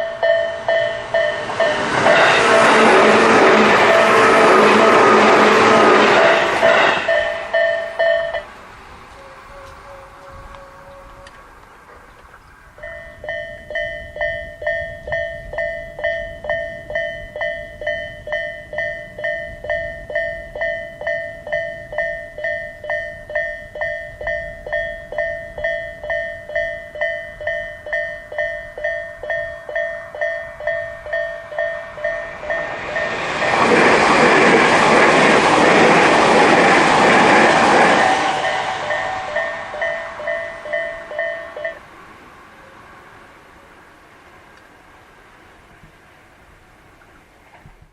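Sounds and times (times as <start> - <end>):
level crossing electronic alarm: 0.0 - 8.5, 12.8 - 33.2, 36.9 - 41.8
train rumble and wheel clatter: 0.0 - 47.9.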